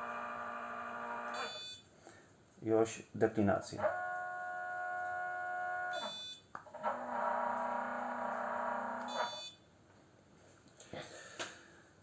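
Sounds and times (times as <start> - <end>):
motor whining: 0.0 - 1.6, 6.8 - 9.3.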